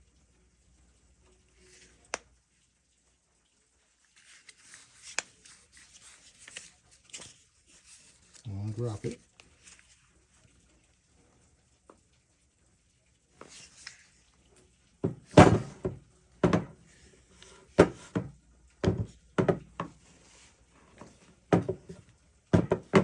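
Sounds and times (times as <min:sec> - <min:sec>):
heavy knocks and thuds: 0:15.0 - 0:16.8, 0:17.8 - 0:19.9, 0:21.5 - 0:21.9, 0:22.6 - 0:23.0.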